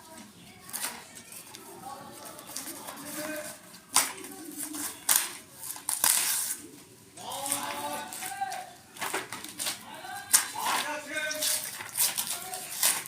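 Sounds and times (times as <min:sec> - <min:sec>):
packaging crinkling rustle: 0:07.3 - 0:13.0.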